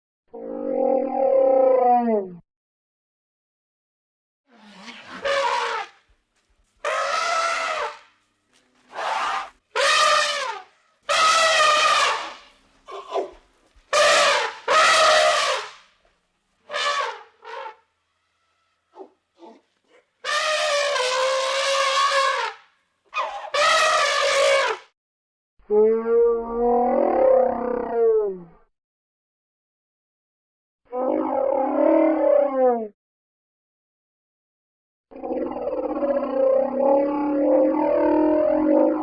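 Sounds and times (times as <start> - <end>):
elephants trumpeting: 4.6 - 6.0, 6.8 - 8.2, 8.9 - 15.8, 16.7 - 17.8, 18.5 - 24.8.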